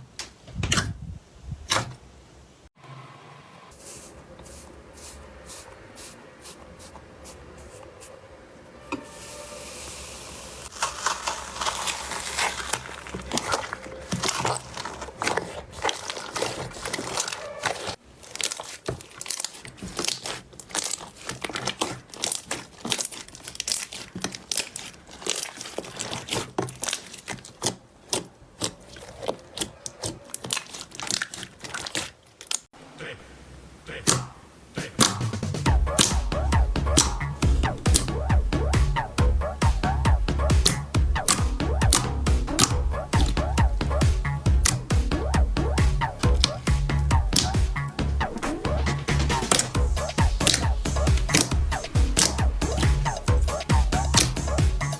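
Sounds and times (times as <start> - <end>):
slime crackling and popping: 10.6 - 32.7, 35.0 - 54.9.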